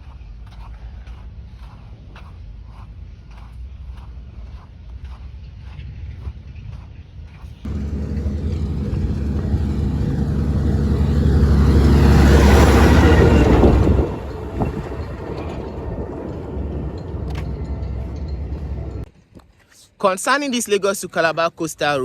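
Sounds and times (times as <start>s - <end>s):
rush of passing vehicle: 7.7s - 19.1s
vehicle engine running: 7.7s - 19.1s.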